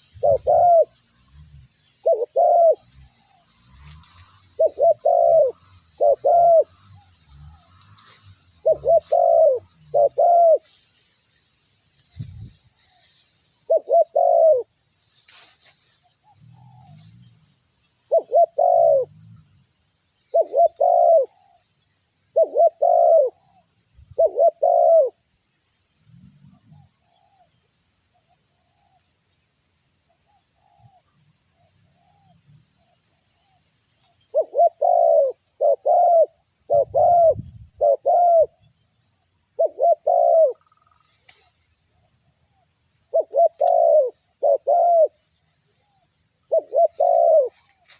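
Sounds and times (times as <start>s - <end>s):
dove cooing: 0.0s - 10.7s, 13.6s - 14.7s, 16.2s - 17.1s, 18.1s - 19.4s, 20.3s - 21.6s, 22.3s - 25.2s, 34.3s - 38.7s, 39.5s - 41.0s, 42.5s - 45.2s, 45.8s - 47.6s.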